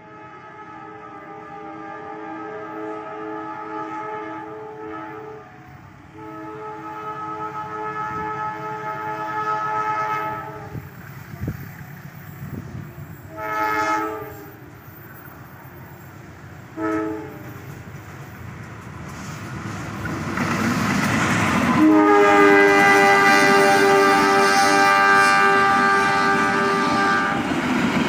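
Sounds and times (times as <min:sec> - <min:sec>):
locomotive air horn blasts: 0:00.0 - 0:10.9, 0:13.2 - 0:14.6, 0:16.7 - 0:17.7, 0:21.7 - 0:27.6
train rumble: 0:00.0 - 0:28.0.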